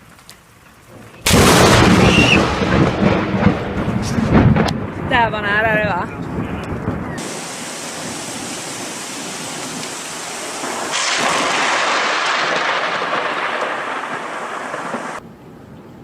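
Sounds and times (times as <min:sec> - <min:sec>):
steady rain hiss: 0:00.0 - 0:16.0
loud rolling thunderclap: 0:01.2 - 0:15.2.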